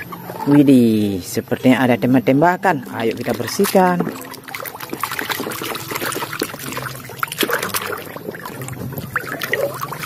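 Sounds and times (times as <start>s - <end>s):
water trickling and splashing: 2.6s - 10.0s.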